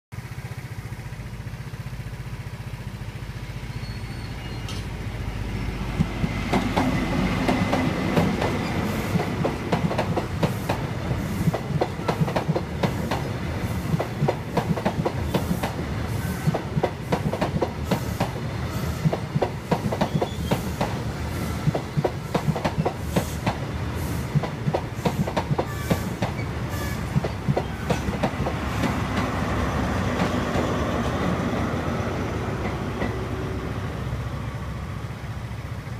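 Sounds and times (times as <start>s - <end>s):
train rumble: 0.2s - 35.9s
train wheels clattering over rail joints: 5.7s - 31.7s.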